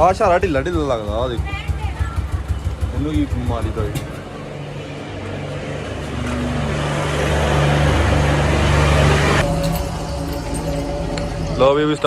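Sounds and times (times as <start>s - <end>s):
vehicle engine running: 0.0s - 12.0s.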